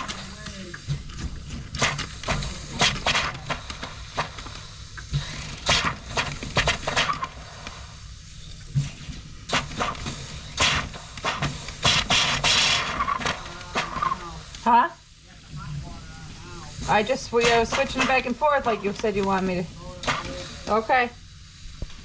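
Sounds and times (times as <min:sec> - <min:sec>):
low steady hum: 0:00.0 - 0:22.0
faucet spitting water and air: 0:08.6 - 0:14.7.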